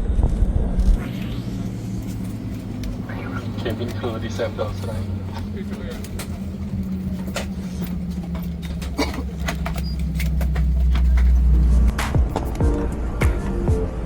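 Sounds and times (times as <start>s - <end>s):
aircraft cabin hum: 0.0s - 14.0s
scattered clicks and knocks: 5.3s - 13.4s.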